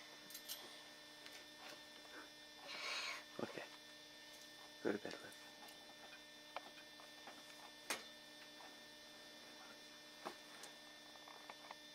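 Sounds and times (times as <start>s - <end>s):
steady electrical hum: 0.0s - 11.9s.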